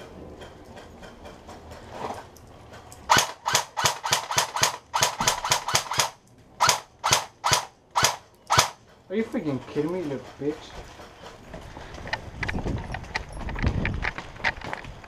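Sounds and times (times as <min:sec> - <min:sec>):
airsoft gun rapid fire: 0:03.1 - 0:08.8.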